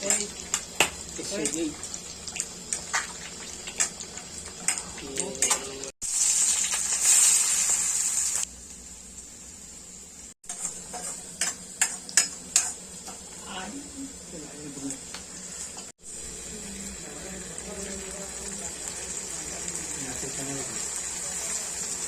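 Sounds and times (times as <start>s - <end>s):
food frying in hot oil: 0.0s - 22.0s
loud sizzle: 0.0s - 22.0s
metal spatula scraping a pan: 10.5s - 13.3s.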